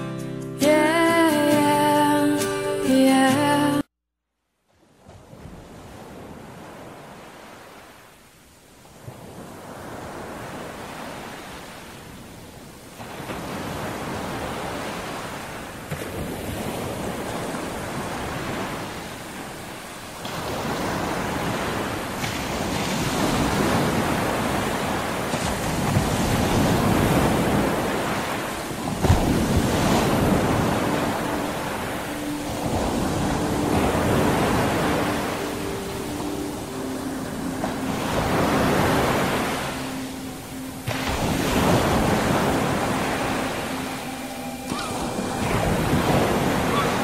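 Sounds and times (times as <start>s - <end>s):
waves washing onto shore: 4.7s - 47.0s
wind on microphone: 20.2s - 39.5s.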